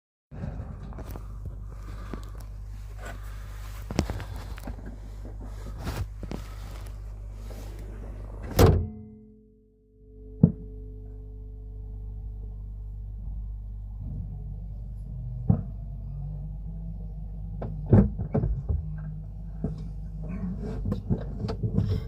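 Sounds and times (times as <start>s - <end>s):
steady low hum: 0.4s - 22.0s
loud thud with held tone: 8.4s - 9.2s.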